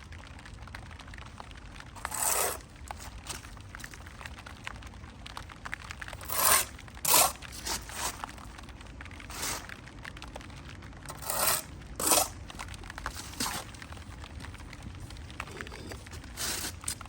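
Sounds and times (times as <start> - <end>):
hand tool scraping brick: 2.0 - 3.5, 6.2 - 8.3, 9.3 - 9.7, 11.1 - 12.4, 13.1 - 13.8, 15.3 - 17.0.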